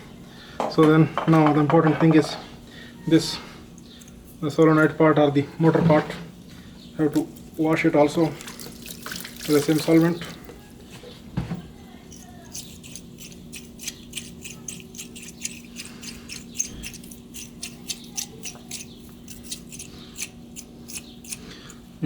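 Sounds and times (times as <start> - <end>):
small irregular clicks and ticks: 12.1 - 21.8.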